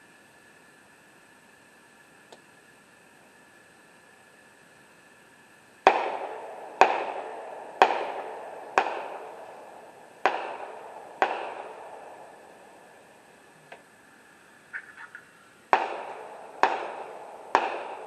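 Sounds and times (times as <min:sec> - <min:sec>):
echoing gunshots: 0:05.8 - 0:13.4, 0:15.7 - 0:18.0.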